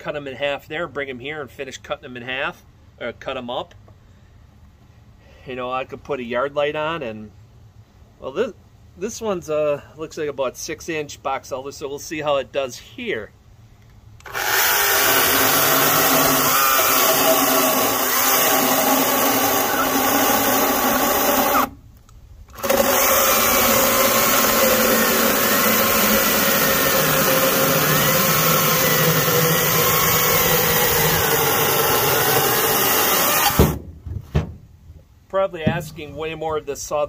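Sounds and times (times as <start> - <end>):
electric chainsaw cutting log: 14.2 - 21.8, 22.5 - 33.8.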